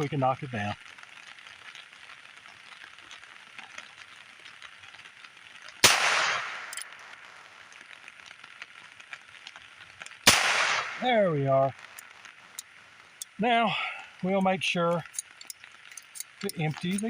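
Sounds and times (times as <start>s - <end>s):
revolver gunshot with echo: 5.8s - 6.7s, 10.3s - 11.1s.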